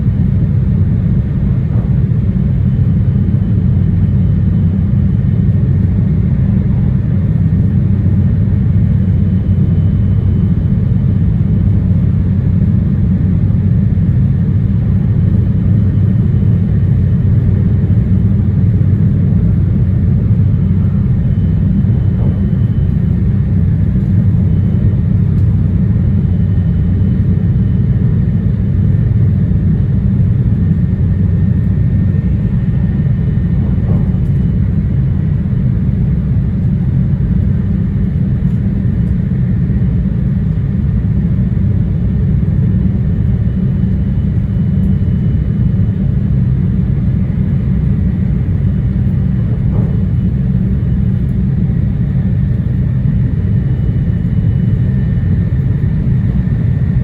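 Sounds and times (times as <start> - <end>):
faint high whine: 18.1 - 27.8
train wheels rumbling: 19.5 - 24.4, 32.5 - 35.8, 48.9 - 52.2.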